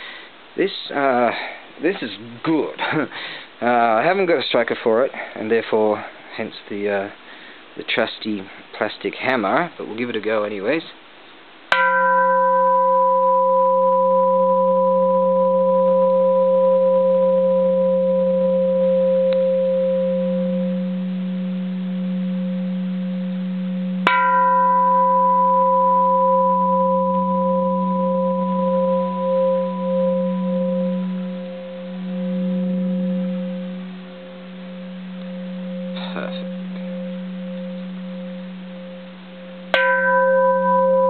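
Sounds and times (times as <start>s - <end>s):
temple bell ringing: 11.7s - 21.0s, 23.8s - 41.0s.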